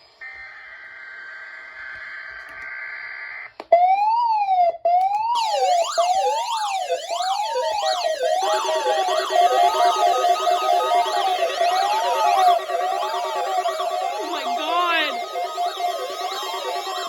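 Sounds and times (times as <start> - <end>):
electronic siren wailing: 3.9 - 17.0
alert data tones: 5.4 - 17.0
pulsing beep tone: 5.4 - 17.0.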